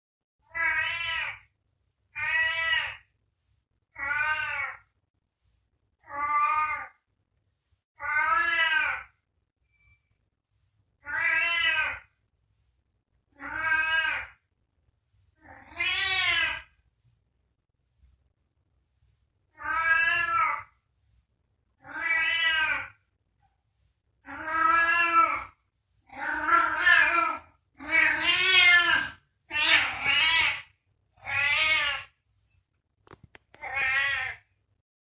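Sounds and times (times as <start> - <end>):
cat meowing: 0.4 - 1.4, 2.2 - 3.0, 3.9 - 4.9, 8.0 - 9.1, 11.0 - 12.1, 13.3 - 14.4, 15.4 - 16.7, 19.5 - 20.7, 21.8 - 23.0, 24.2 - 32.1.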